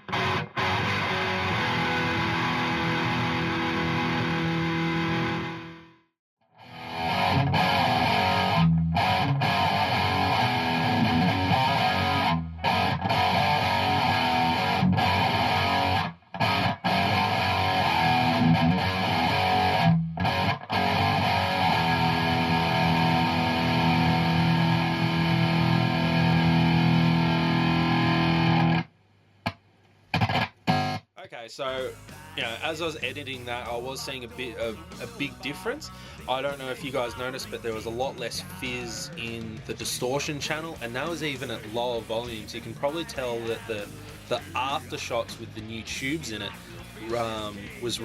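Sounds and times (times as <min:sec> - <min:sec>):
distorted electric guitar riff: 0:00.0 - 0:06.0, 0:06.6 - 0:28.9, 0:30.1 - 0:31.0, 0:31.8 - 0:48.0.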